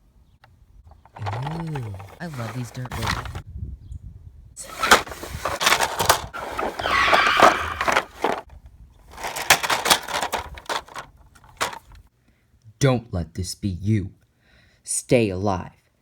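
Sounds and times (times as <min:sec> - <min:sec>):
tyre screech: 0:06.6 - 0:08.4.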